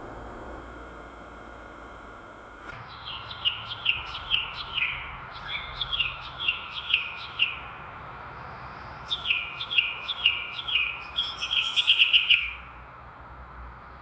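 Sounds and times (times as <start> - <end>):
faint steady hiss: 0.0 - 2.8.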